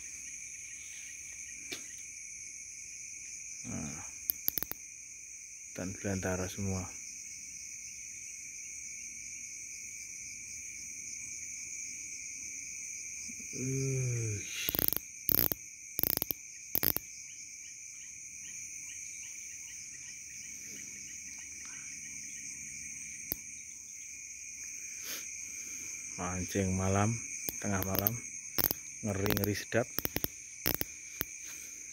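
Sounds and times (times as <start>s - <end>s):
crickets and insects chirping: 0.0s - 31.9s
low voice: 3.7s - 4.1s, 13.5s - 14.6s.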